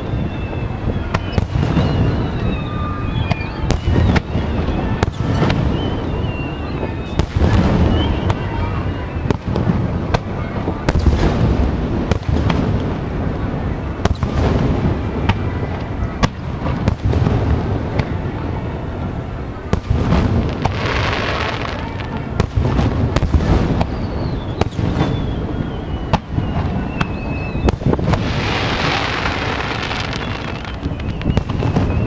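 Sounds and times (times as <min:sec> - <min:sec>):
whistling firework shell: 0:00.0 - 0:18.5, 0:19.1 - 0:32.0
fireworks bursting with sharp bangs: 0:00.0 - 0:32.0.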